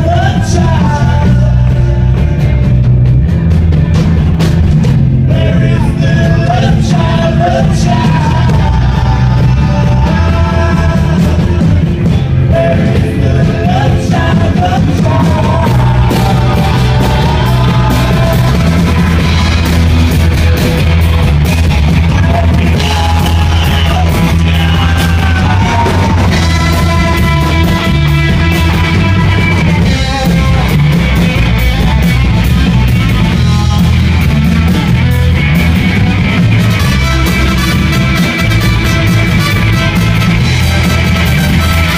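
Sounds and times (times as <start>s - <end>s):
person singing: 0.0s - 2.7s, 5.2s - 19.9s, 21.8s - 35.0s
live rock band playing: 0.0s - 41.9s.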